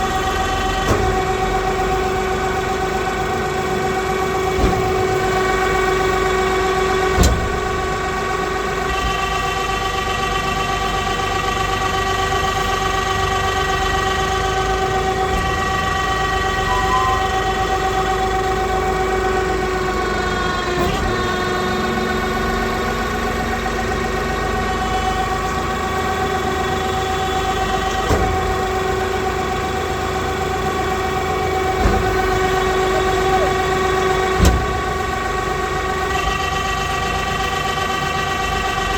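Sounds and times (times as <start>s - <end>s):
baling press machine whine: 0.0s - 38.9s
sharp machine knocks: 7.1s - 8.0s, 31.8s - 35.1s.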